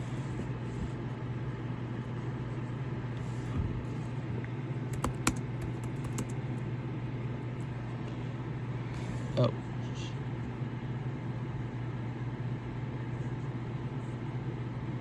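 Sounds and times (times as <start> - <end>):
steady low hum: 0.0 - 15.0
computer keyboard clicks: 4.9 - 6.4.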